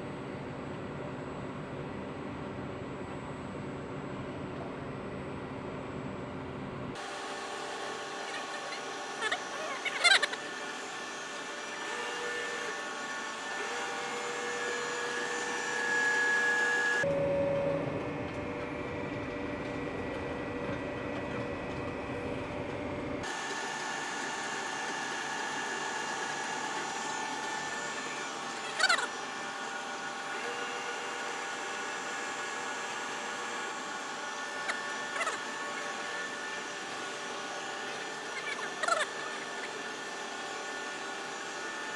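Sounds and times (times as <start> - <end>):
machine whine: 0.0 - 41.9.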